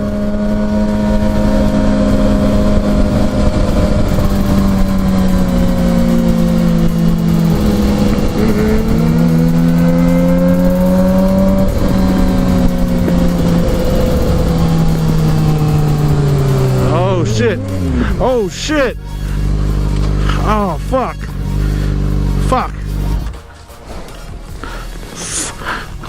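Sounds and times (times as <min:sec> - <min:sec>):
wind noise on microphone: 0:00.0 - 0:18.2
motorcycle engine running: 0:00.0 - 0:26.0.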